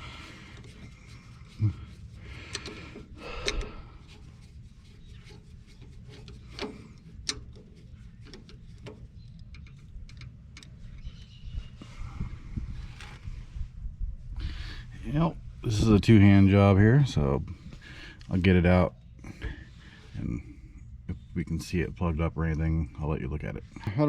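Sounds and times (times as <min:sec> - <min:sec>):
steady low hum: 0:00.0 - 0:24.0
screwdriver clicking and scraping metal: 0:00.5 - 0:11.1.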